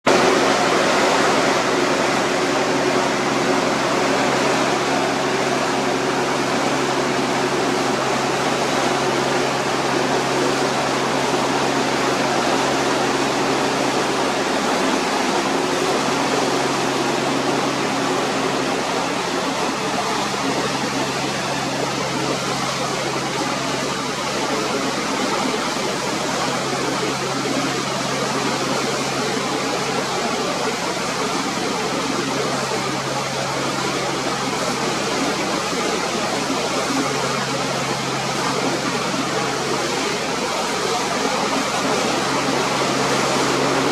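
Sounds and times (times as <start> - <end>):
sea rushing: 0.1 - 43.9.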